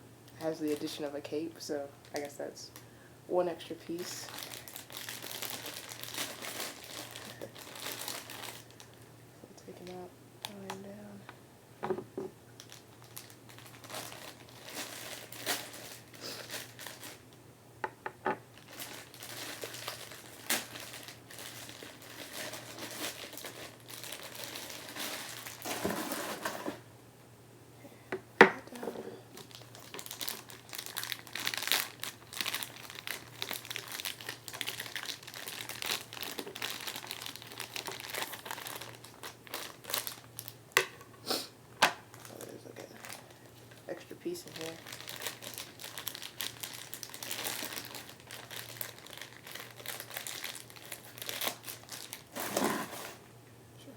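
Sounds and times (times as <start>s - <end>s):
plastic packaging crinkling: 4.0s - 9.1s, 12.6s - 17.4s, 18.5s - 26.8s, 29.3s - 41.0s, 42.0s - 53.3s.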